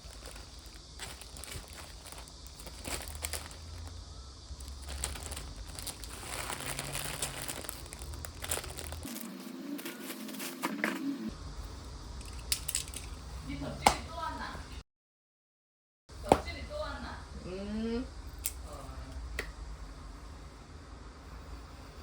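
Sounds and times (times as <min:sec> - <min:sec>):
plastic wrap and paper crinkling: 0:00.0 - 0:11.1.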